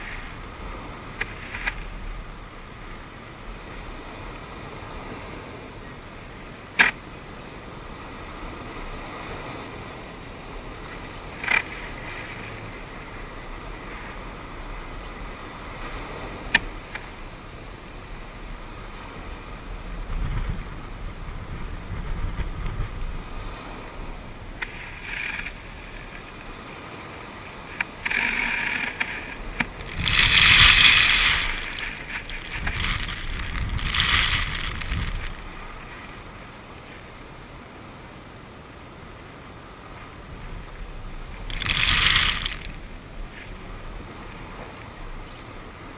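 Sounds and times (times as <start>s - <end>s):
hissing surges of water: 0.0s - 45.9s
ocean water washing: 0.0s - 45.9s
wind noise: 7.8s - 26.7s, 27.5s - 36.5s, 40.0s - 45.9s.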